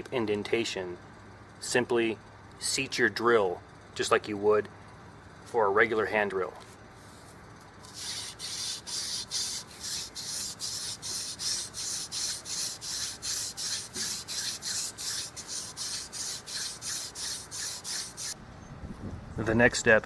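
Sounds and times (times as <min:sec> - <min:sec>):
wooden spindle rubbing: 0:07.8 - 0:18.4.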